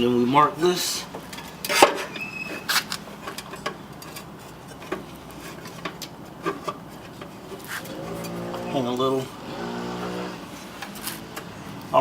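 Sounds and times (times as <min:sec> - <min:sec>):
rubbing and scraping: 0:01.3 - 0:11.7.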